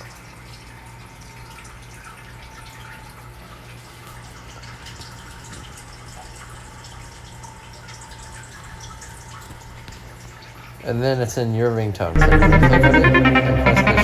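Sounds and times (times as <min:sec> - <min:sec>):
fish tank water trickling: 0:00.0 - 0:10.9
low hum: 0:12.2 - 0:14.0.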